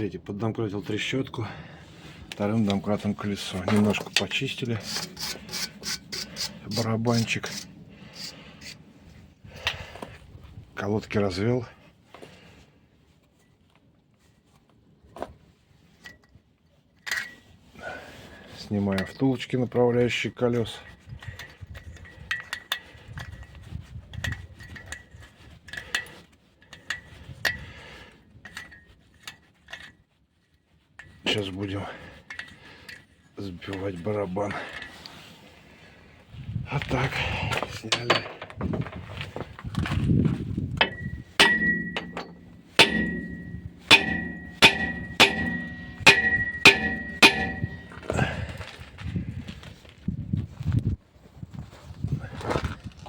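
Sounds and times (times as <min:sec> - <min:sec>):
hammer striking metal drum: 0:40.8 - 0:48.1
metal drum ringing: 0:40.8 - 0:48.1
metallic clinks of steel tools: 0:40.8 - 0:48.1.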